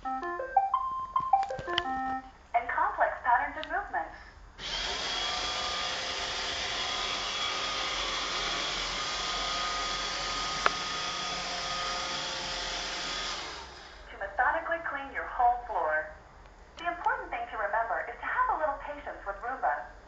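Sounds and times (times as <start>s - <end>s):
robot vacuum running: 4.6s - 14.0s.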